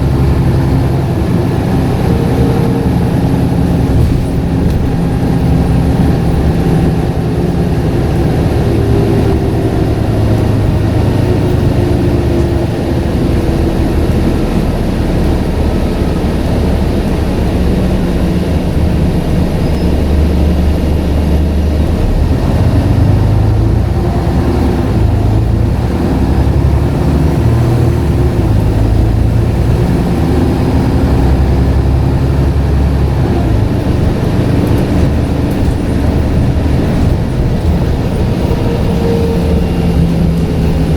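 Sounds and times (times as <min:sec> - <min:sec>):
bus diesel engine running: 0:00.0 - 0:40.9
road noise: 0:00.0 - 0:40.9.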